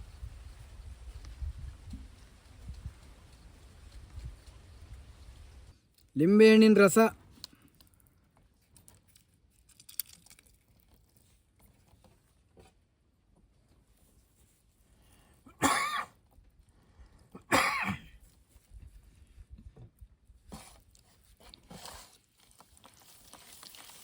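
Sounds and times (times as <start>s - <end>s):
person coughing: 15.5s - 16.2s, 17.4s - 18.2s.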